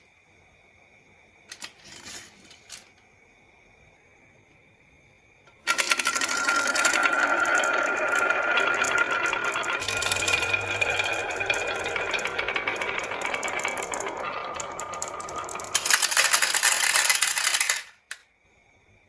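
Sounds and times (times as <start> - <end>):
marbles clattering down wooden run: 5.6 - 18.1.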